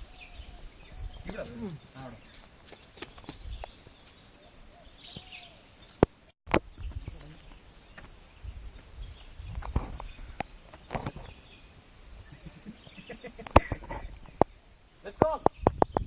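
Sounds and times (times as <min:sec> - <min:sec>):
faint bird chirps: 0:00.0 - 0:06.0
handling knocks and footsteps: 0:02.2 - 0:04.3.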